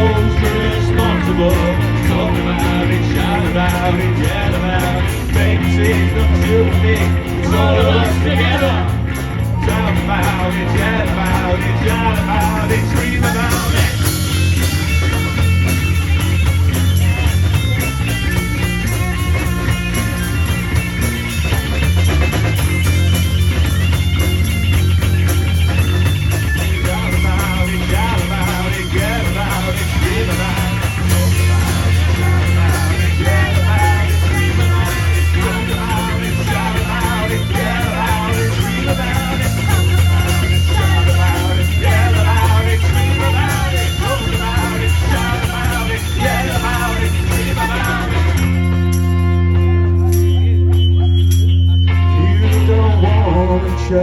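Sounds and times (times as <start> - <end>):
vocal shouts: 0.0 - 14.2
steady drum beat: 0.0 - 51.0
electric guitar: 0.0 - 54.0
heavy bass line: 0.0 - 54.0
punk rock band playing: 0.0 - 54.0.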